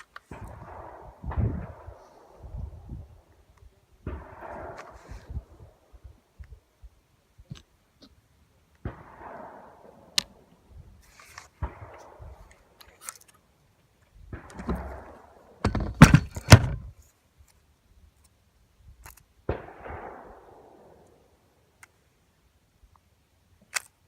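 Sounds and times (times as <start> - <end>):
gunshots with echoes: 0.3 - 2.6, 4.0 - 5.9, 8.8 - 10.2, 19.5 - 21.0.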